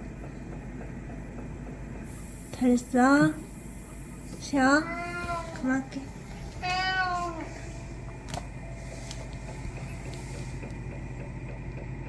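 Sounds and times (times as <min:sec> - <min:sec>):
cat meowing: 0:04.7 - 0:07.8.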